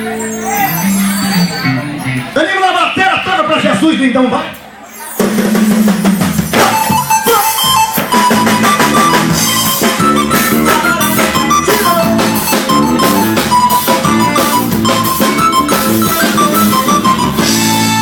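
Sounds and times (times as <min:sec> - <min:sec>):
live band playing: 0:00.0 - 0:18.0
drum kit beat: 0:05.1 - 0:18.0.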